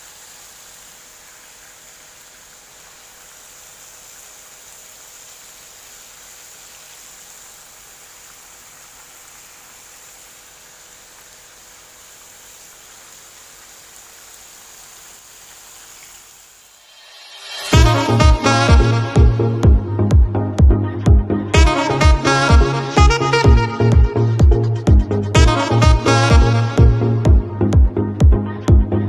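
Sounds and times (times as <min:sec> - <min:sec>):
chicken sizzling in hot oil: 0:00.0 - 0:18.0.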